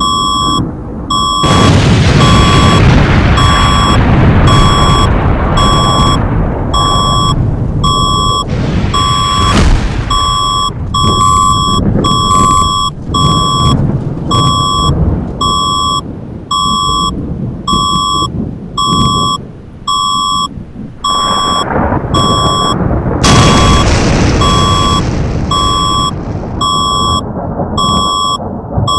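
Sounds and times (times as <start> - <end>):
short electronic beeps: 0.0 - 27.2, 27.8 - 28.9
thunder and explosion rumble: 0.0 - 28.9
loud blast: 1.0 - 15.2, 20.7 - 28.0.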